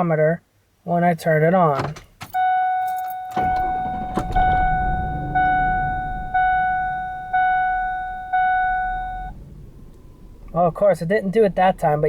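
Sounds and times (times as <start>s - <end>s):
truck engine starting and idling: 1.9s - 12.0s
vehicle warning chime dinging: 2.2s - 10.8s.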